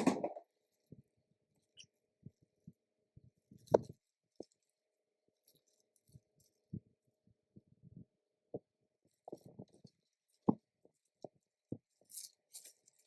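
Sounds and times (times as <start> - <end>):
handling knocks and clicks: 0.0 - 0.4.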